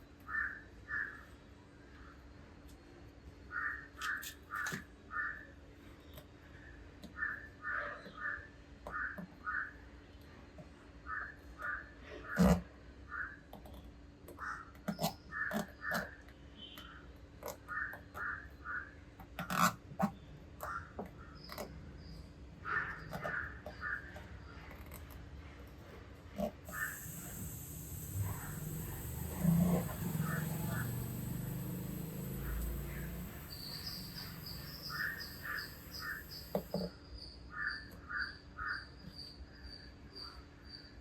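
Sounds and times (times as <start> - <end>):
faint steady hum: 26.7 - 36.9.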